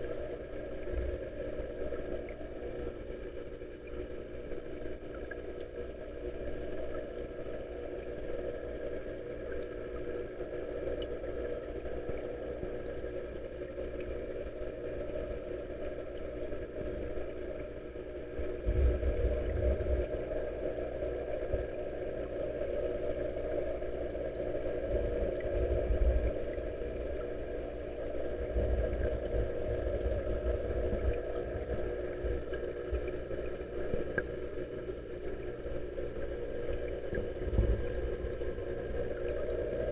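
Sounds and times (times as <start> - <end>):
pond waterfall and pump hum: 0.0 - 2.4.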